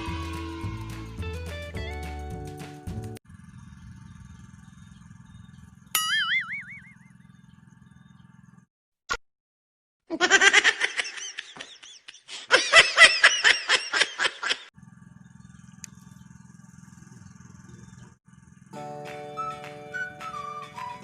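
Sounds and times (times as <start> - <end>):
loud laughter: 10.1 - 14.7.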